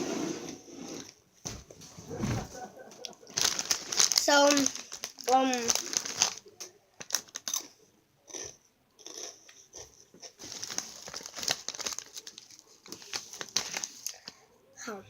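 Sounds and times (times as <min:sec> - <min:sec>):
crinkly packaging rustling: 0:01.9 - 0:07.8, 0:10.3 - 0:14.4.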